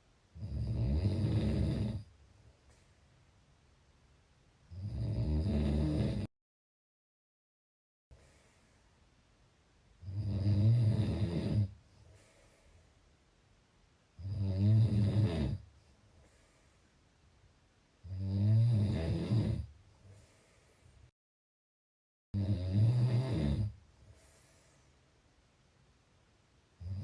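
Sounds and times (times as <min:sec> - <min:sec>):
loud rattling snores: 0:00.4 - 0:02.0, 0:04.7 - 0:06.3, 0:10.0 - 0:11.7, 0:14.2 - 0:15.6, 0:18.1 - 0:19.7, 0:22.4 - 0:23.8
faint breath sound: 0:08.1 - 0:09.1, 0:11.7 - 0:13.2, 0:15.6 - 0:17.2, 0:19.8 - 0:21.1, 0:23.9 - 0:25.3.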